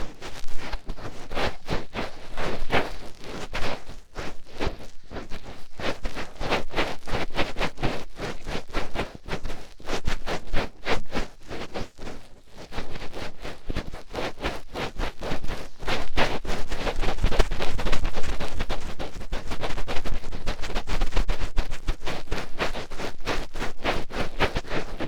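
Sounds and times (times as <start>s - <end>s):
fingertips scratching at ear: 12.8s - 25.0s.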